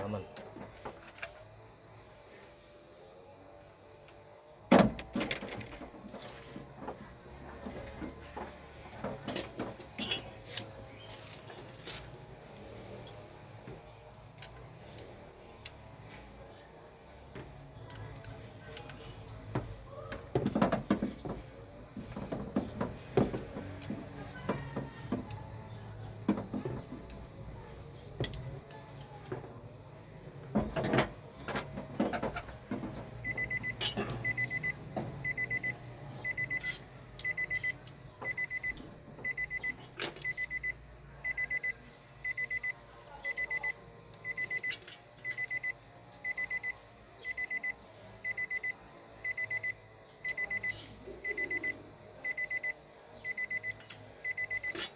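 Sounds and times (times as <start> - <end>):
electronic beeper pulsing: 47.3 - 54.8.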